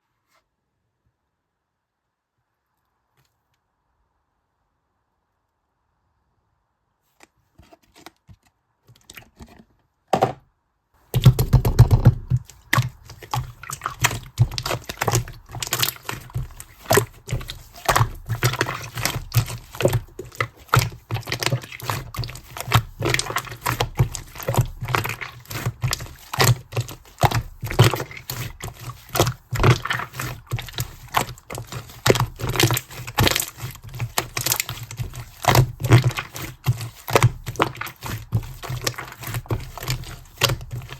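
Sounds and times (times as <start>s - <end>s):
slime squished by hand: 11.2s - 40.9s.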